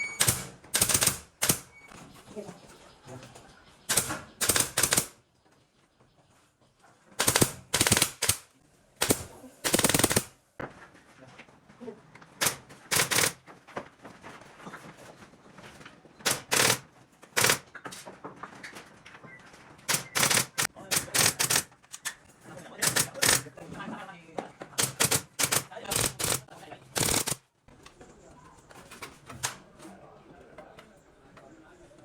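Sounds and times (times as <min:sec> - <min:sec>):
power tool driving fasteners: 0:00.0 - 0:01.7, 0:03.9 - 0:05.2, 0:07.2 - 0:08.4, 0:09.0 - 0:10.3, 0:12.4 - 0:13.4, 0:16.2 - 0:17.8, 0:19.9 - 0:22.1, 0:22.8 - 0:23.5, 0:24.8 - 0:27.4.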